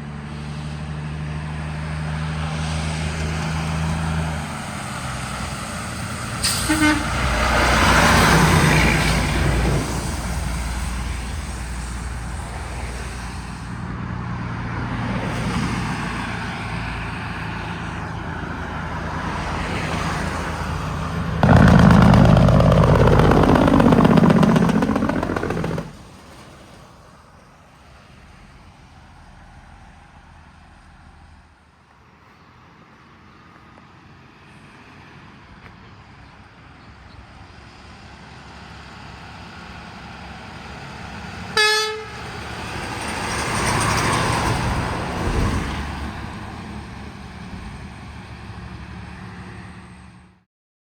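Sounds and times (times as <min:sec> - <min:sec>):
heavy vehicles passing: 0:00.0 - 0:27.0
distant traffic: 0:00.3 - 0:34.1, 0:35.2 - 0:50.3.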